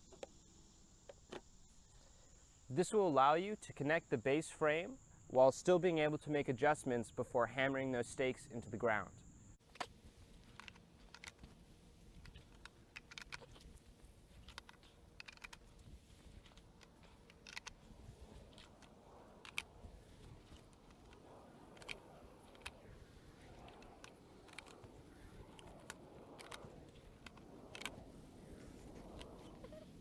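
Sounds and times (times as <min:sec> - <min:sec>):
plastic brackets clicking: 0:09.6 - 0:22.9, 0:23.5 - 0:29.8.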